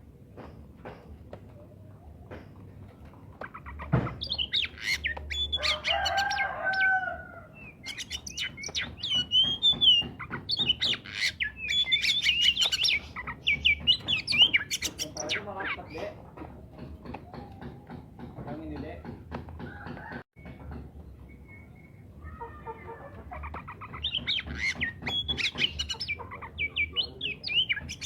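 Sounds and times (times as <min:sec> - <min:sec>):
bird singing whistles and chirps: 0:04.2 - 0:07.0, 0:07.6 - 0:15.5, 0:21.2 - 0:22.1, 0:24.0 - 0:28.0.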